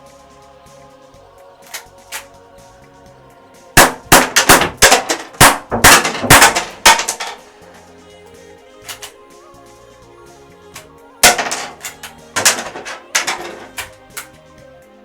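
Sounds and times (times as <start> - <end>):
cap gun shots: 1.7 - 2.4, 3.8 - 7.4, 8.9 - 9.2, 10.8 - 14.4
metallic clacks: 3.8 - 7.5, 8.8 - 9.2, 10.8 - 14.4.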